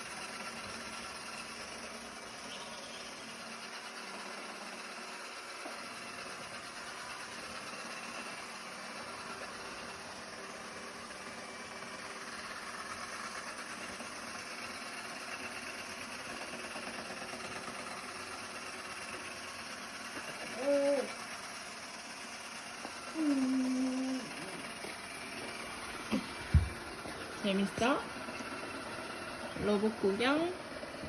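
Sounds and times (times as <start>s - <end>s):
robot vacuum whirring: 0.0s - 31.0s.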